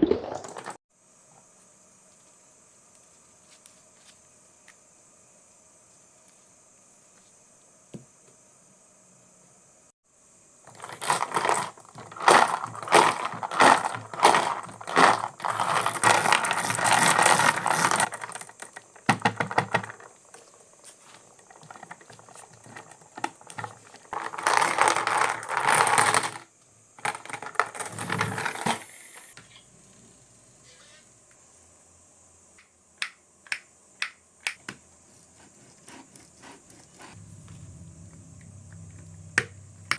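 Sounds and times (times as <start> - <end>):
marbles rolling down wooden run: 10.7 - 20.1, 21.5 - 26.4, 27.0 - 29.3.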